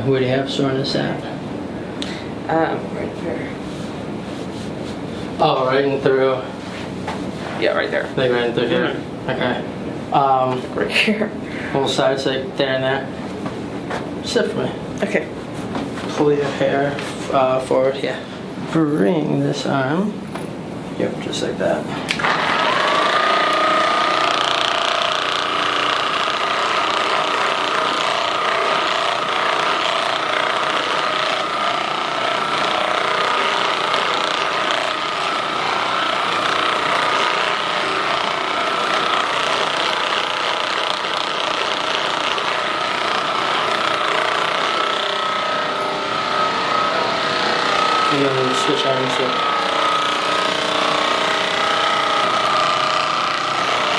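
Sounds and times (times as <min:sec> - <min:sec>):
massage gun motor whine: 0:22.1 - 0:53.9.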